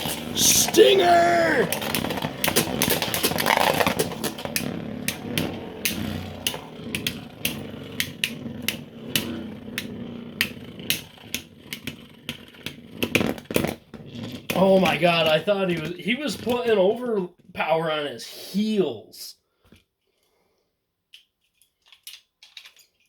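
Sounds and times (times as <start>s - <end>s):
spinning tops clacking: 0.0s - 13.8s
spinning tops scraping: 0.0s - 17.2s.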